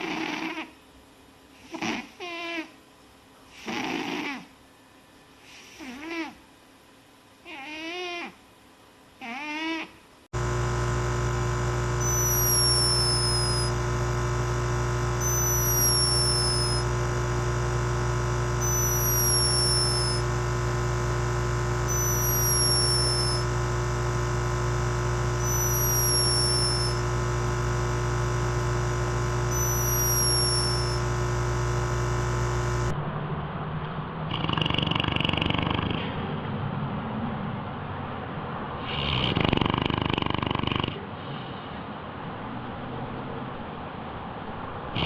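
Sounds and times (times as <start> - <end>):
animal snoring with whistle: 0.0 - 0.7, 1.6 - 2.7, 3.5 - 4.5, 5.5 - 6.4, 11.9 - 13.8, 14.4 - 31.2, 34.3 - 36.3, 38.8 - 41.1
steady droning hum: 10.1 - 34.2.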